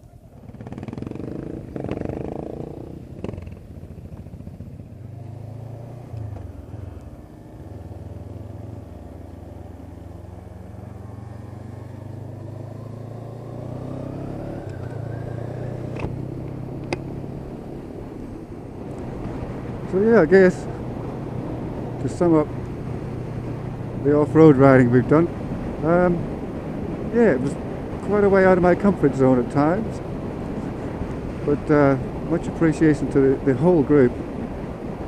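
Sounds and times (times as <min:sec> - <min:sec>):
motorcycle engine running: 0:00.1 - 0:26.1.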